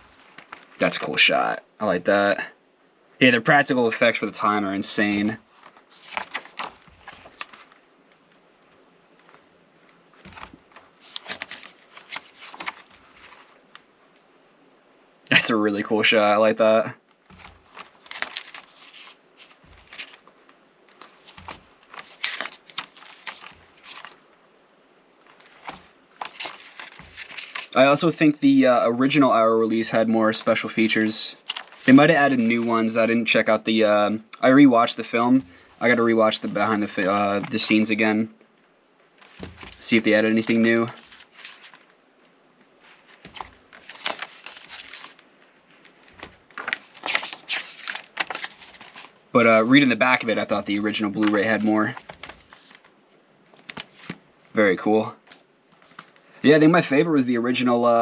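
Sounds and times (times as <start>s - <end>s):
paper pages rustling: 0.0s - 1.3s, 5.0s - 13.9s, 17.0s - 24.2s, 25.2s - 28.2s, 29.7s - 33.6s, 34.5s - 38.2s, 39.2s - 42.0s, 42.6s - 56.4s
plastic cases clicking and crackling: 10.2s - 13.5s, 17.2s - 24.2s, 25.3s - 27.8s, 31.4s - 31.9s, 39.2s - 41.9s, 43.1s - 45.2s, 45.8s - 49.2s, 51.2s - 52.9s, 53.5s - 54.2s.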